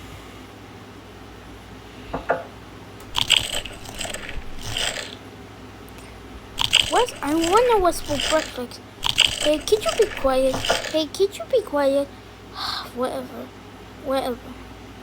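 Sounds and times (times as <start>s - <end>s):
toy pieces clattering: 3.0s - 5.2s, 6.6s - 11.1s.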